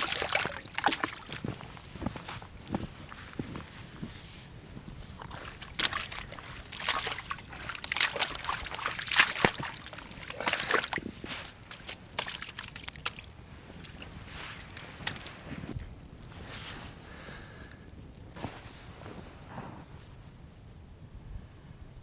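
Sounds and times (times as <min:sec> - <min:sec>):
water sloshing and splashing: 0:00.0 - 0:03.4, 0:05.1 - 0:15.5.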